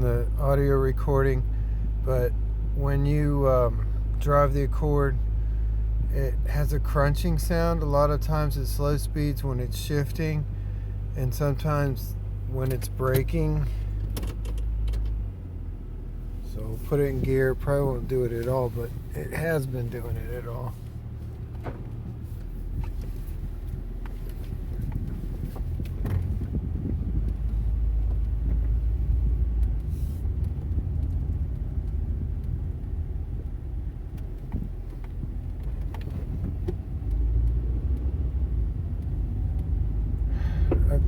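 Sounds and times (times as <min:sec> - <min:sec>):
car engine and road rumble: 0:00.0 - 0:41.0
faint clicks: 0:33.4 - 0:38.1, 0:38.8 - 0:40.9.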